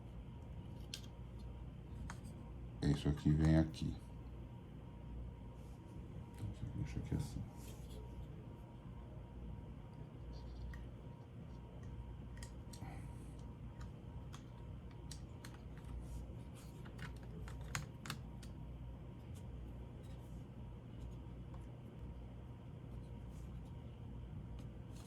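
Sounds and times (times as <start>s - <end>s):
low steady hum: 0.0s - 25.0s
laptop parts clicking: 13.4s - 16.0s, 16.7s - 18.6s.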